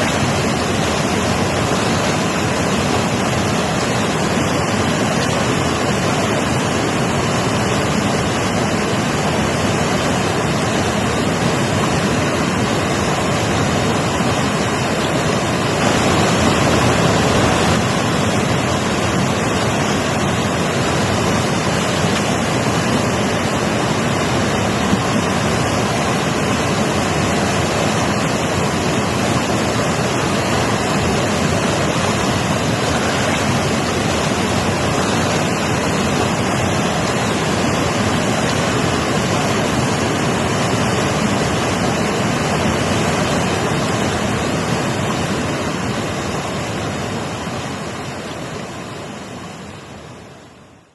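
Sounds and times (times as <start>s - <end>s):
river water rushing: 0.0s - 50.9s.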